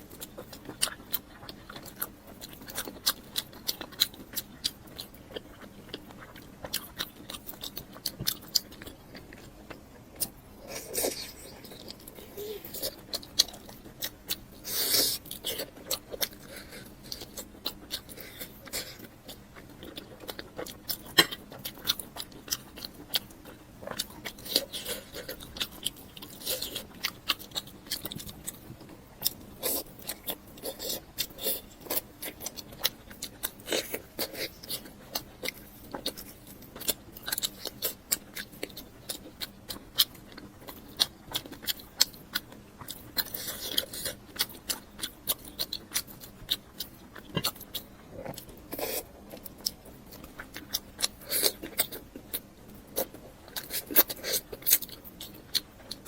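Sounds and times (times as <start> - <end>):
person chewing food: 0.0 - 56.0.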